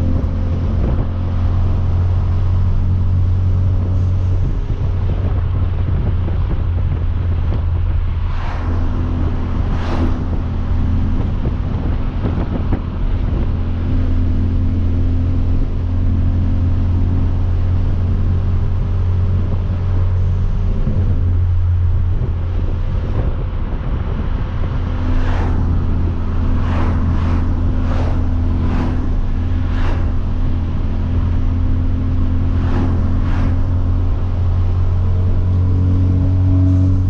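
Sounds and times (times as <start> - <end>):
car engine droning at cruise: 0.0 - 37.0
road and wind noise: 0.0 - 37.0
brief whooshes: 8.2 - 8.9, 9.7 - 10.2, 26.6 - 30.6, 32.5 - 33.8.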